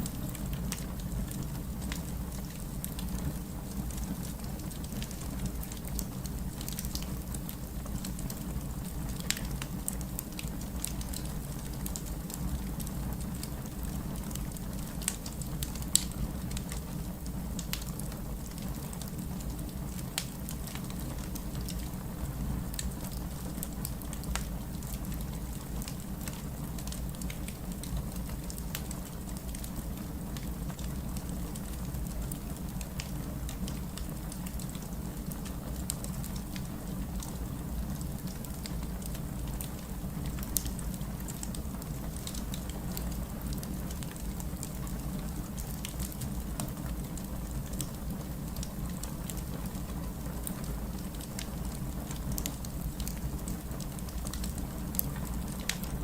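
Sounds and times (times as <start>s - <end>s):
fireplace crackling: 0.0s - 56.0s
wood fire pops and snaps: 14.2s - 16.8s, 47.7s - 56.0s.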